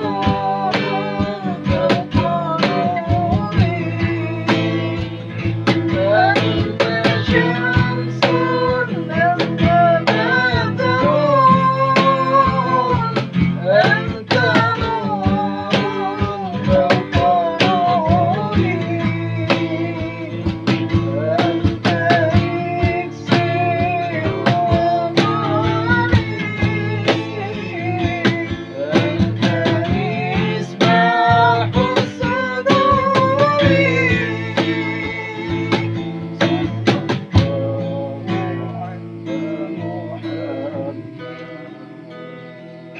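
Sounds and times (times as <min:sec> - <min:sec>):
devotional singing: 0:00.0 - 0:42.9
strummed acoustic guitar: 0:00.0 - 0:42.9.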